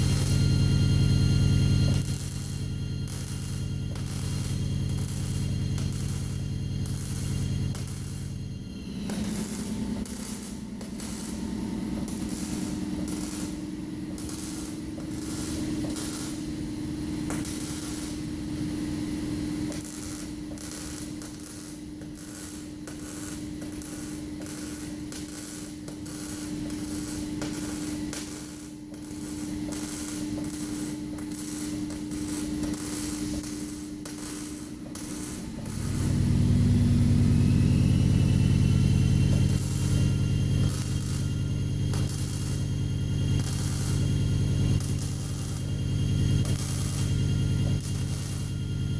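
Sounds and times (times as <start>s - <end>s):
loud low drone: 0.0s - 17.4s, 34.6s - 48.9s
steady hum: 0.0s - 48.9s
welder arc crackling: 0.0s - 48.9s.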